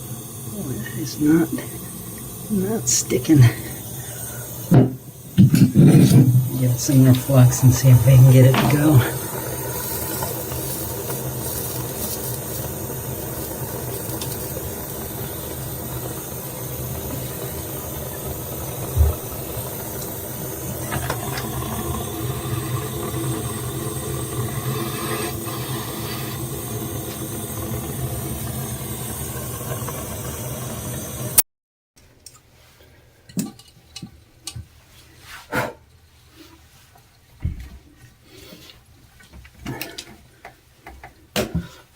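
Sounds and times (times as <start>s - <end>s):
gas torch flame hissing: 0.0s - 31.4s
low thump: 4.7s - 6.4s.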